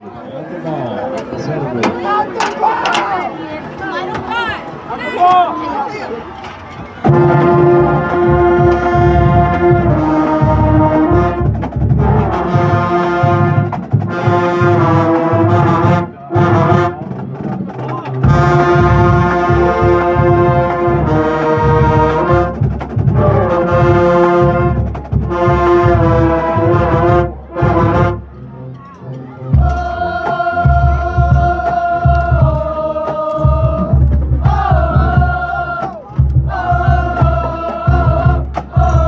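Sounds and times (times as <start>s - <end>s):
marching band playing: 1.2s - 39.0s
brass long chords: 7.0s - 17.6s, 18.2s - 35.8s
heavy low drum beat: 7.1s - 15.5s, 17.6s - 28.2s, 29.6s - 39.0s.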